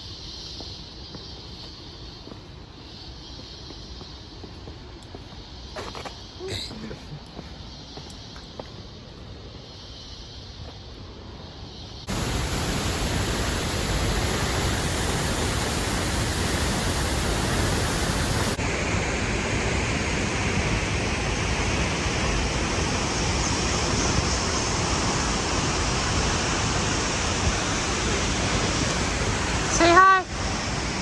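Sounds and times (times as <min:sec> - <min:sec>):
waterfall rushing: 0:12.1 - 0:31.0.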